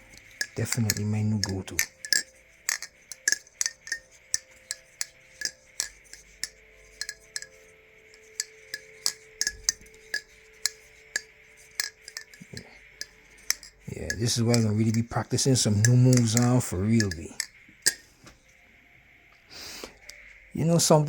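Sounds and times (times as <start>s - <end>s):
butterfly knife clicking: 0.1s - 18.1s.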